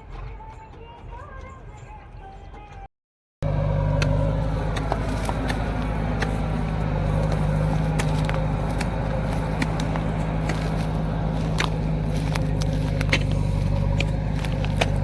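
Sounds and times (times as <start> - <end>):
diesel engine running: 3.4 - 15.0
sharp clicks and knocks: 3.8 - 15.0.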